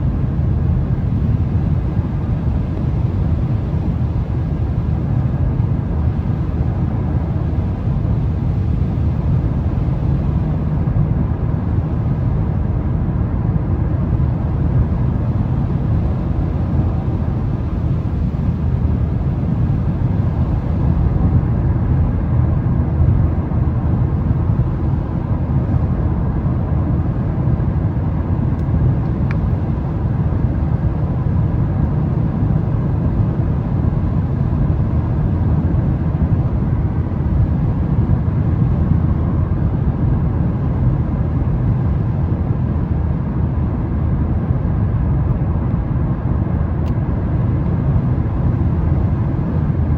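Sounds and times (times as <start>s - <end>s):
small tick: 28.6s - 29.4s.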